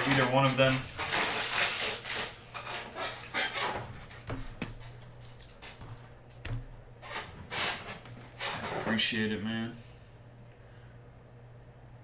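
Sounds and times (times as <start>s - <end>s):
steady low hum: 0.0s - 12.0s
cards rustling: 4.0s - 6.4s.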